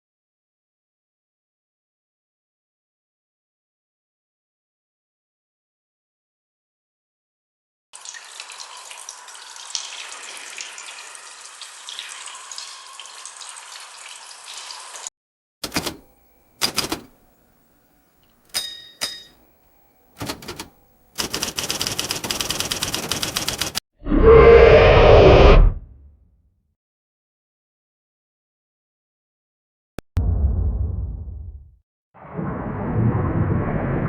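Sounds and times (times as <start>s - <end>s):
quick run of clicks: 20.2s - 23.8s.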